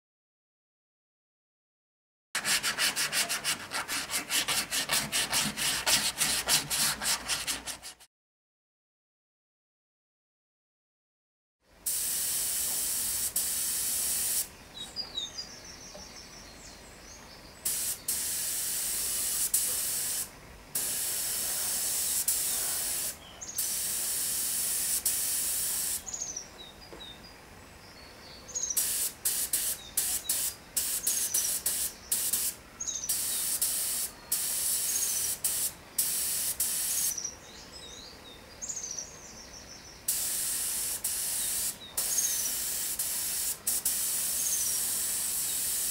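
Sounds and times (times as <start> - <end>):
pressurised spray hissing: 11.9 - 14.5, 17.6 - 26.1, 28.8 - 37.2, 40.1 - 45.9
birds chirping: 26.0 - 29.0, 29.6 - 36.0, 41.3 - 42.8.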